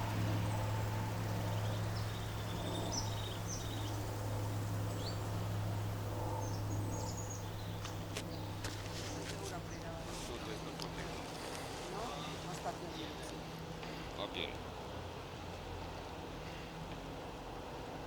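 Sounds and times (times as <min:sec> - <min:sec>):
small birds chirping: 0:00.0 - 0:11.0
chairlift machinery hum: 0:00.0 - 0:14.1.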